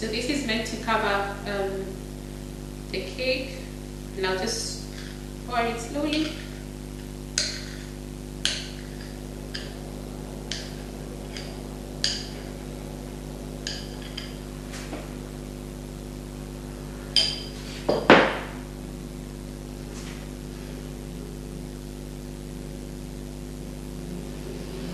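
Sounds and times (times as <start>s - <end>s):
steady hum: 0.0s - 24.9s
utensils and bowl clinking: 4.8s - 9.9s, 10.5s - 12.5s, 13.6s - 14.5s, 17.2s - 18.4s
loud knock: 17.9s - 18.6s.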